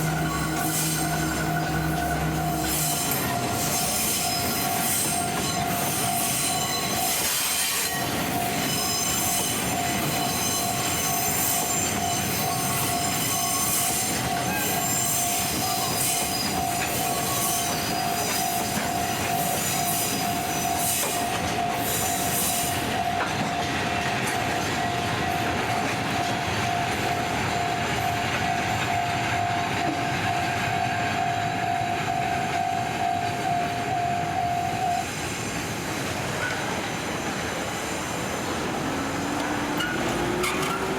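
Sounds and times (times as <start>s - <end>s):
train wheels squealing: 0.0s - 38.5s, 39.7s - 40.9s.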